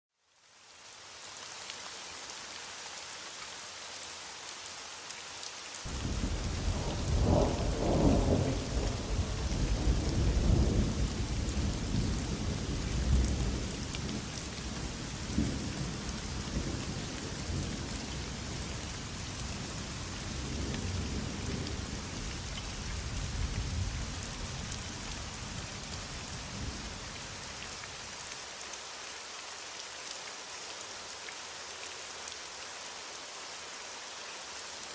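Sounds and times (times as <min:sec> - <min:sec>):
heavy rain hissing: 0:00.6 - 0:34.9
rolling thunder: 0:05.9 - 0:13.6.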